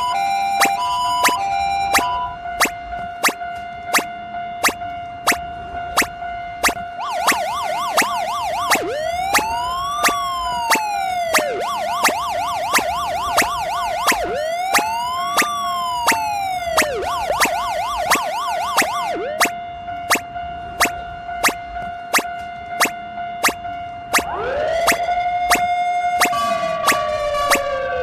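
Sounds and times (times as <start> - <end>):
railroad crossing bell ringing: 0.0 - 7.0
emergency siren warble and wail: 0.0 - 28.0.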